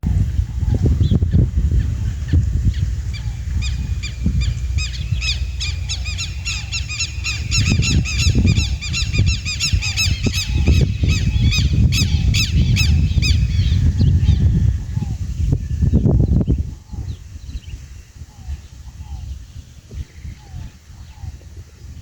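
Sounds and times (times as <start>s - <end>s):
lapwings calling harshly: 3.1s - 14.4s.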